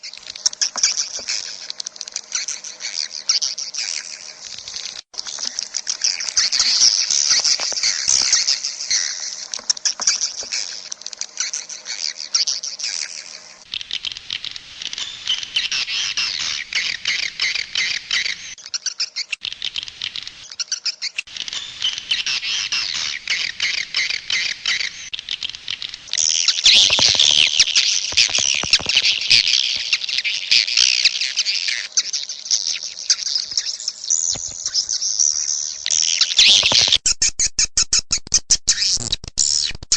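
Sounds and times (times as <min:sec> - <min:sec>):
swiftlets twittering: 0:20.4 - 0:37.0.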